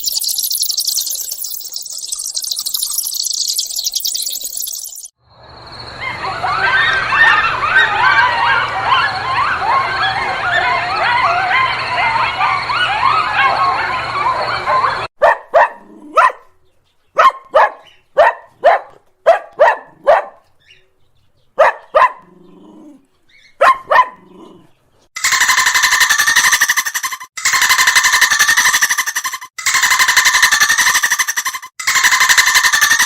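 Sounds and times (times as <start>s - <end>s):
chorus of warbling animal calls: 5.9s - 15.1s, 24.2s - 33.0s
dog barking: 10.6s - 16.5s, 17.2s - 20.5s, 21.6s - 22.3s, 23.6s - 24.6s.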